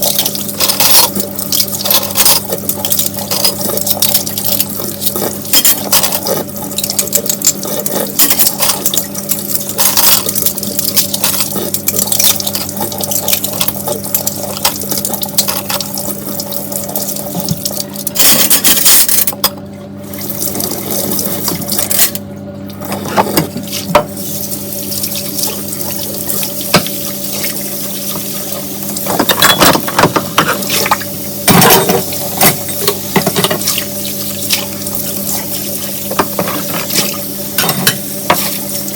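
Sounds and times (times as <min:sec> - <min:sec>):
tap water running into sink: 0:00.0 - 0:19.5, 0:22.8 - 0:38.9
dishes clinking: 0:29.1 - 0:30.7.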